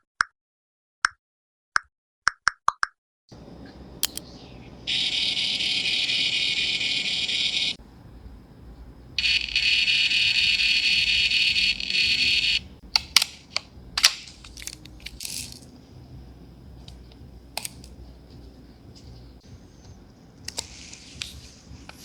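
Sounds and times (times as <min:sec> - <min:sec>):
sharp clicks: 0:03.3 - 0:22.0
label printer motor buzzing: 0:03.4 - 0:21.8
label rustling: 0:07.8 - 0:22.0.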